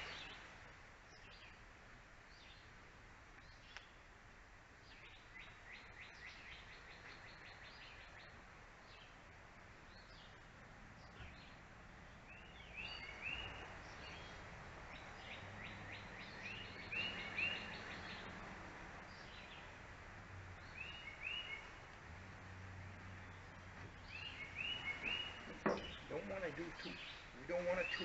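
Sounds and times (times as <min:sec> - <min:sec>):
small birds chirping: 0:00.0 - 0:04.1, 0:04.8 - 0:28.0
bird trill: 0:24.0 - 0:28.0.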